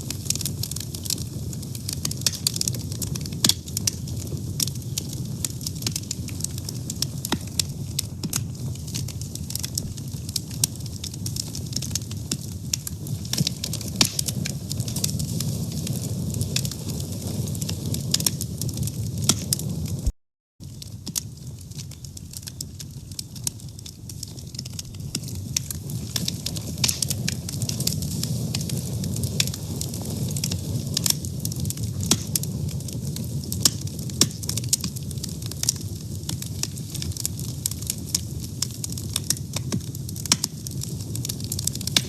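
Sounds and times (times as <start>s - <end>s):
low rumble of flames: 0.0s - 42.0s
wood fire crackling and popping: 0.0s - 42.0s.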